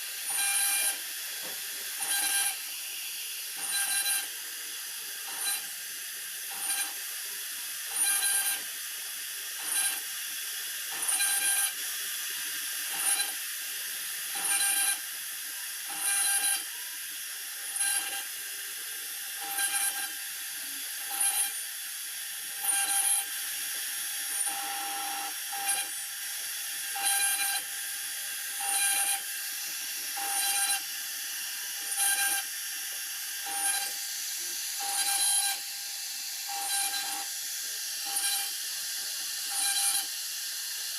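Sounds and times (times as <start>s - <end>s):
router spindle whining: 0.0s - 7.0s, 15.7s - 40.9s
router cutting bursts: 0.0s - 16.7s, 19.2s - 40.9s.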